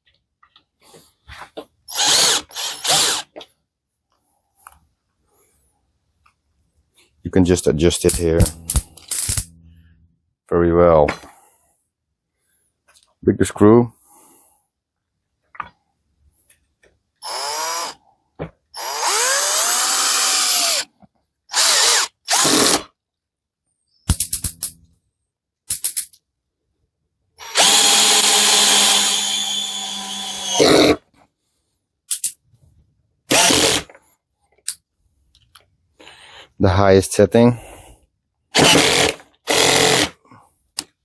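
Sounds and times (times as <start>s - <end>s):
cordless drill motor whirring: 1.9s - 3.3s, 17.2s - 18.0s, 18.8s - 20.8s, 21.5s - 22.8s, 27.4s - 31.0s, 33.3s - 33.8s, 38.6s - 40.1s
drill clicks: 1.9s - 3.4s, 8.1s - 9.6s, 27.5s - 31.0s, 33.3s - 33.9s, 38.6s - 40.1s.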